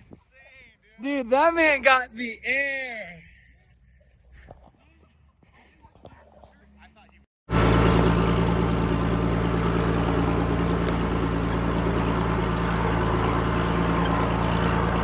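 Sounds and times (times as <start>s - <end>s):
vehicle engine running: 7.5s - 15.0s.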